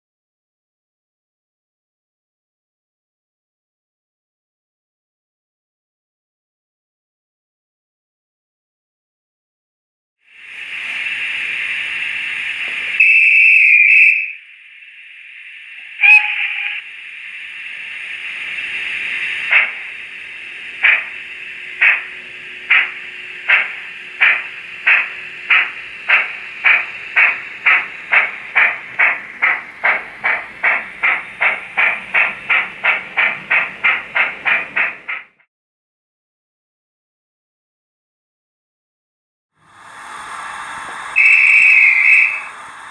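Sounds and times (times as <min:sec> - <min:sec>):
steady steam hiss: 0:10.3 - 0:35.3, 0:39.6 - 0:42.9
steam exhaust chuffs: 0:10.4 - 0:35.4, 0:39.6 - 0:42.9
steam whistle: 0:12.9 - 0:14.5, 0:15.8 - 0:16.9, 0:40.1 - 0:42.9.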